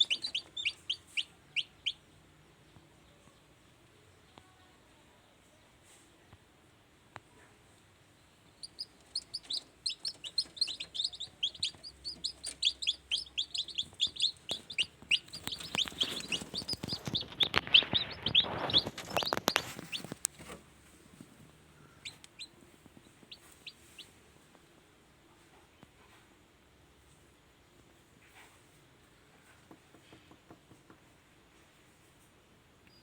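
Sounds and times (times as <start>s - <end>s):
chicks peeping: 0.0s - 2.1s, 8.5s - 24.2s.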